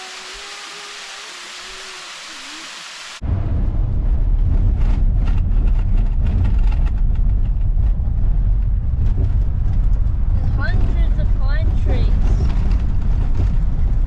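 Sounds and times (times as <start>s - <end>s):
vehicle road and wind noise: 3.2s - 14.0s
small knocks and rattles: 4.8s - 10.2s.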